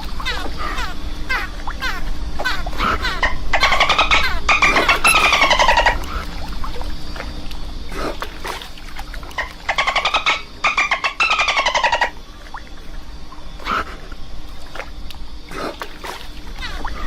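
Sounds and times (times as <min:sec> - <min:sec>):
dolphin burst-pulse calls: 0:00.0 - 0:06.6, 0:09.2 - 0:12.3.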